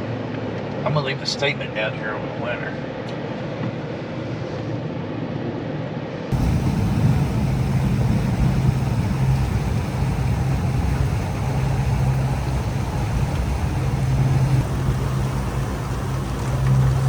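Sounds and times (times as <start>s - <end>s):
constant rushing noise: 6.3s - 17.0s
motorboat engines droning: 6.3s - 17.0s.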